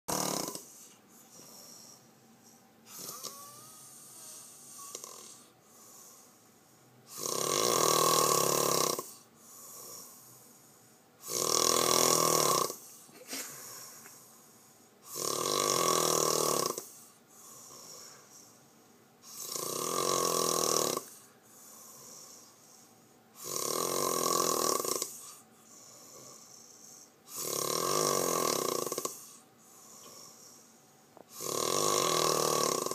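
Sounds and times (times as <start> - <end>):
loud snoring: 0.1 - 2.0, 2.9 - 6.3, 7.1 - 10.3, 11.2 - 13.0, 15.0 - 18.4, 19.2 - 22.8, 23.4 - 30.6, 31.3 - 32.9
quiet breathing: 0.4 - 7.2, 8.5 - 11.3, 12.6 - 15.2, 16.6 - 19.5, 21.0 - 24.0, 24.7 - 31.8.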